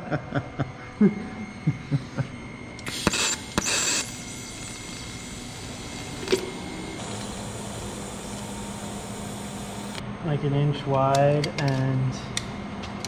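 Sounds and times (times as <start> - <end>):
low talk and chuckling: 0.0 - 2.4
shop hum: 0.0 - 13.0
welding tacks: 2.8 - 10.0.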